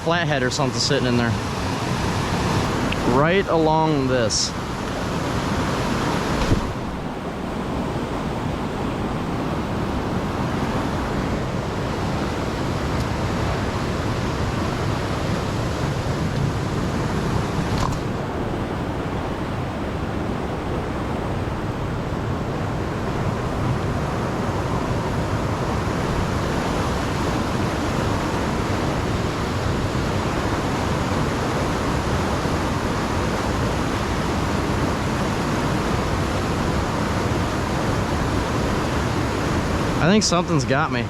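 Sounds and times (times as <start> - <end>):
floodwater rushing: 0.0 - 41.0.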